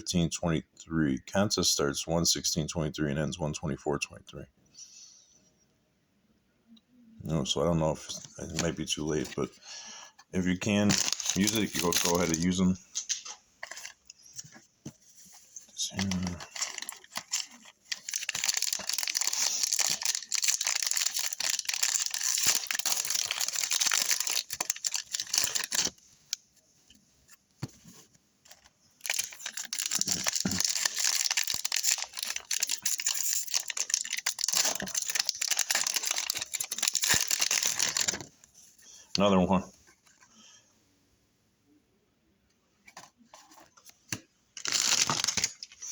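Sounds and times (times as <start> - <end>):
plastic wrapper tearing and crinkling: 10.6 - 14.0, 15.9 - 26.0, 28.5 - 38.3, 44.6 - 45.9.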